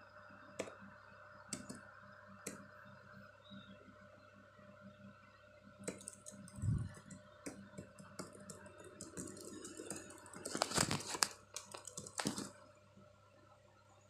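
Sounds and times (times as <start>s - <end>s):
sharp clicks and taps: 1.5s - 1.8s, 5.8s - 12.5s.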